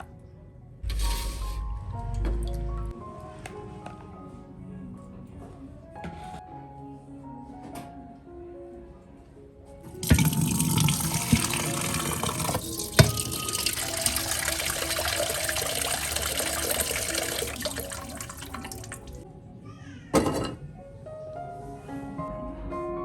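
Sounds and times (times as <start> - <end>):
tap water running into sink: 9.9 - 19.2.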